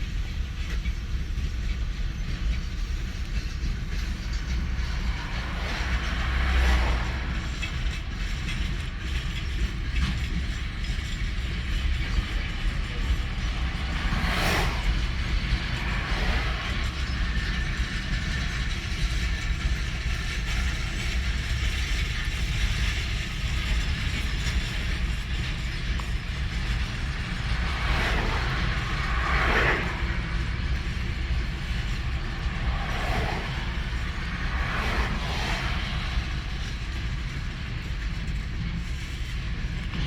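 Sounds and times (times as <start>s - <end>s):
wheels rumbling on rails: 0.0s - 40.0s.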